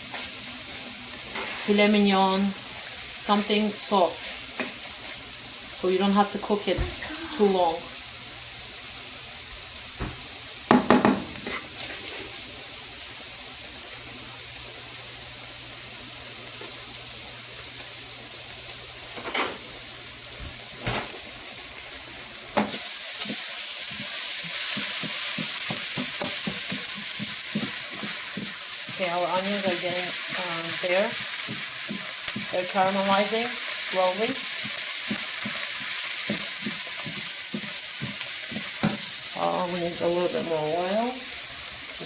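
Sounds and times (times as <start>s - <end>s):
beef and onions sizzling in oil: 0.0s - 42.0s
utensil knocking against pan: 10.7s - 11.3s.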